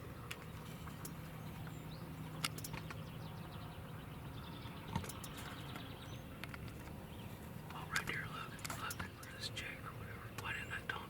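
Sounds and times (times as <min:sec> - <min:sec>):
faint steady hum: 0:00.0 - 0:11.0
sharp clicks: 0:02.4 - 0:03.0, 0:04.9 - 0:06.9, 0:07.7 - 0:09.4.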